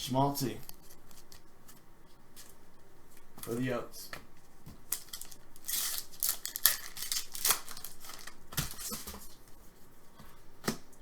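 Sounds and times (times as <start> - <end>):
cards flipping: 4.9 - 9.3.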